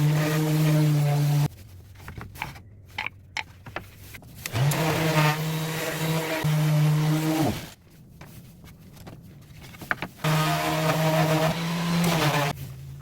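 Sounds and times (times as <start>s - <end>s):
power tool motor running: 4.5s - 7.7s.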